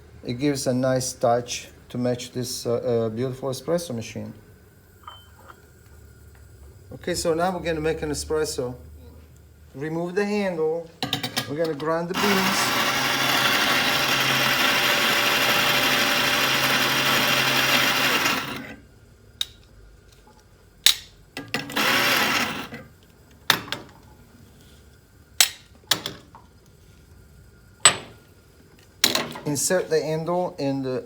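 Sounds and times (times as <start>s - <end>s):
coffee grinder grinding: 12.1s - 18.8s, 21.5s - 22.9s.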